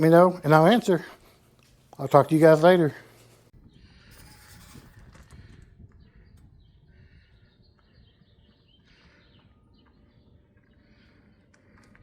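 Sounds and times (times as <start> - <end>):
distant birds chirping: 5.4 - 12.0.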